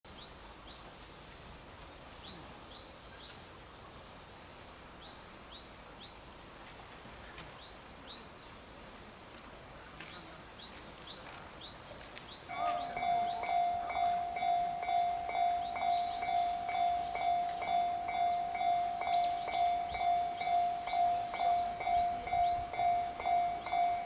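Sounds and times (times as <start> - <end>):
outdoor background noise: 0.0 - 24.0
birds chirping: 10.0 - 24.0
level-crossing warning bell: 12.5 - 24.0.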